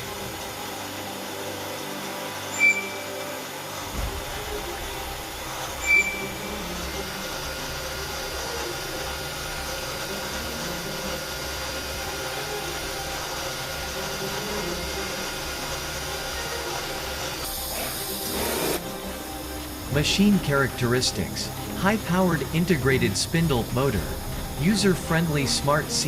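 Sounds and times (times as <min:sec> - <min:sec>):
lathe machining hum and hiss: 0:00.0 - 0:26.0
high-pitched chirp: 0:02.5 - 0:03.2, 0:05.8 - 0:06.5.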